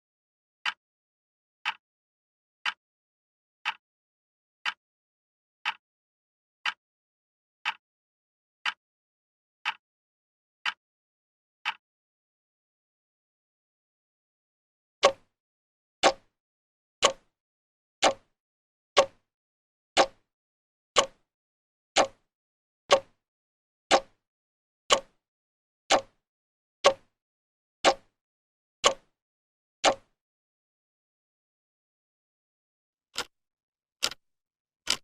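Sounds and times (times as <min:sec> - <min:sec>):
clock ticking: 0:01.6 - 0:01.8, 0:03.6 - 0:03.8, 0:05.6 - 0:05.8, 0:07.6 - 0:07.8, 0:09.6 - 0:09.8, 0:11.6 - 0:11.8, 0:15.0 - 0:15.3, 0:16.0 - 0:16.3, 0:17.0 - 0:17.3, 0:18.0 - 0:18.3, 0:19.0 - 0:19.3, 0:20.0 - 0:20.3, 0:21.0 - 0:21.2, 0:22.0 - 0:22.3, 0:22.9 - 0:23.2, 0:23.9 - 0:24.2, 0:24.9 - 0:25.2, 0:25.9 - 0:26.2, 0:26.8 - 0:27.2, 0:27.8 - 0:28.2, 0:28.8 - 0:29.2, 0:29.8 - 0:30.2, 0:34.0 - 0:34.2.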